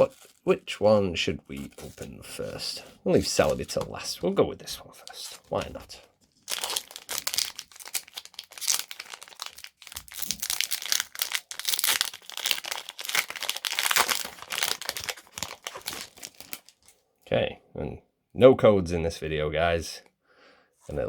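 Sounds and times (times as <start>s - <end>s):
foil pack tearing and crinkling: 6.5s - 16.9s.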